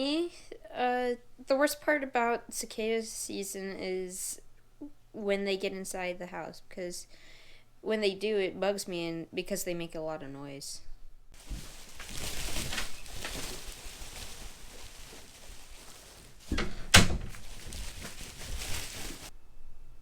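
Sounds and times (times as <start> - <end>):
rustling and knocking: 11.4 - 19.3.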